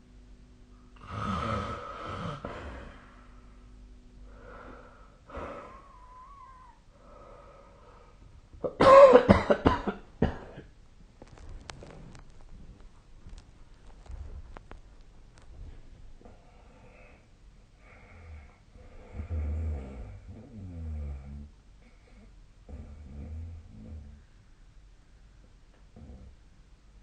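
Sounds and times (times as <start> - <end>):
sputtering snore burst: 1.0 - 3.1
person snoring: 1.0 - 3.3, 4.3 - 8.0, 17.9 - 21.5
whistling wheeze: 5.4 - 6.8.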